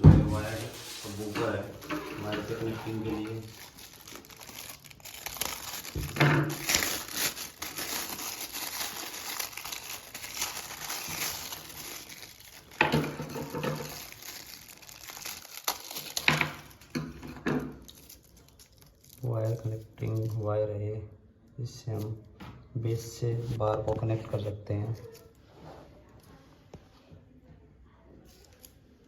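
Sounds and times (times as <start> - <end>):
plastic packaging crinkling: 0.4 - 20.5.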